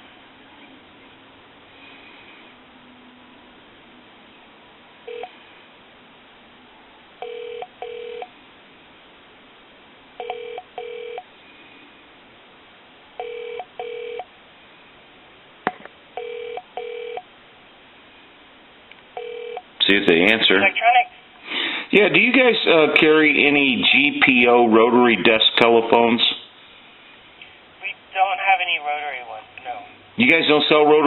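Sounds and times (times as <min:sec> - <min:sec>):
telephone ringback tone: 0:05.1 - 0:05.4, 0:07.2 - 0:08.3, 0:10.2 - 0:11.3, 0:13.2 - 0:14.3, 0:16.2 - 0:17.2, 0:19.2 - 0:19.6.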